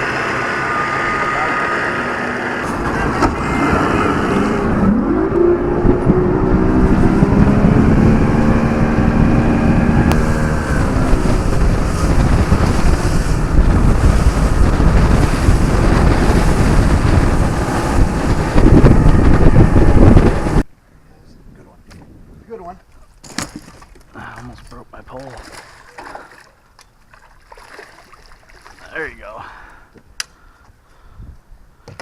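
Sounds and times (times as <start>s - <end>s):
boat motor running: 0.0s - 20.6s
wind rumbling on microphone: 2.6s - 23.9s, 31.0s - 31.8s.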